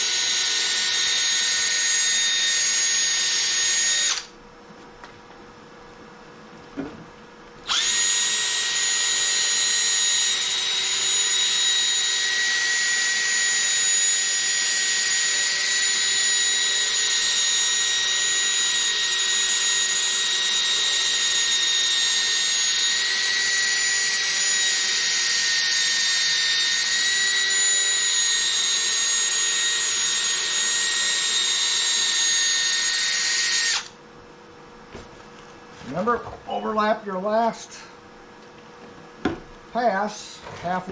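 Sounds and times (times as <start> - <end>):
cordless drill sanding plastic: 7.7 - 33.9.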